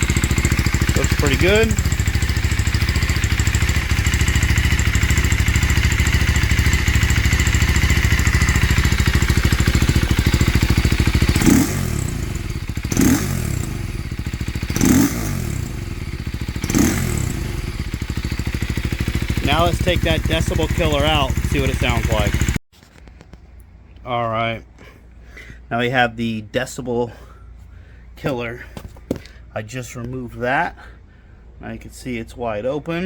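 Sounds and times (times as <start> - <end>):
motorcycle engine idling: 0.0 - 22.6, 27.2 - 30.0
motorcycle engine revving: 0.0 - 22.6.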